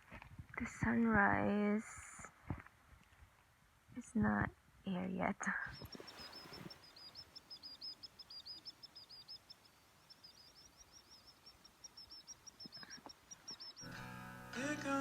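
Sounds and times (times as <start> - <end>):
small bird chirping: 5.5 - 14.2.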